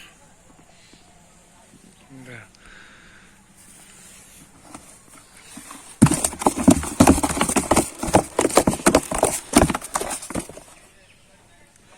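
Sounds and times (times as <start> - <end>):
rapid knocks and slaps: 5.6 - 10.7.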